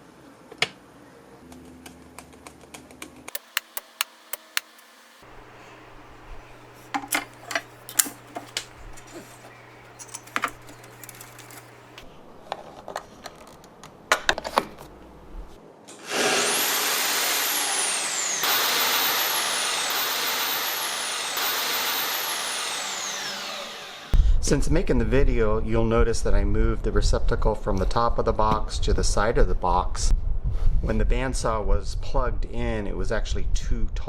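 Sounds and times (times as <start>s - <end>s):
power tool motor whine: 3.3s - 12.0s, 16.0s - 24.1s.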